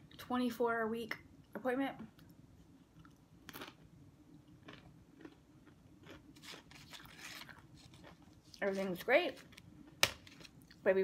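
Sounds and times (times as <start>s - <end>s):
chewing and crunching food: 2.2s - 10.9s.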